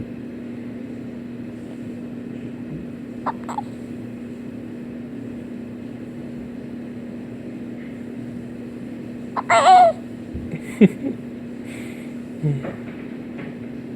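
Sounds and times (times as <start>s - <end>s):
baby hiccuping: 3.3s - 3.7s, 9.4s - 10.0s.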